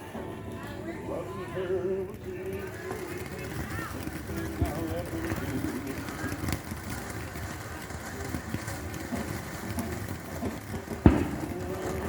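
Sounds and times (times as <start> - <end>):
firework bang: 7.9 - 12.0.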